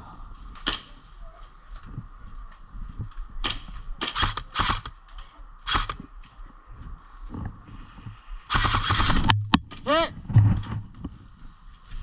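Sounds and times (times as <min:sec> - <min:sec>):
airsoft gun shots: 0:03.4 - 0:04.9, 0:05.7 - 0:06.0, 0:08.5 - 0:09.8.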